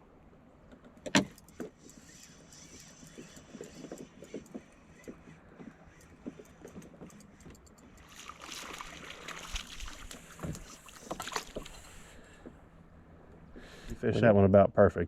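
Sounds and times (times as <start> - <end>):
water splashing around canoe: 8.0 - 12.4.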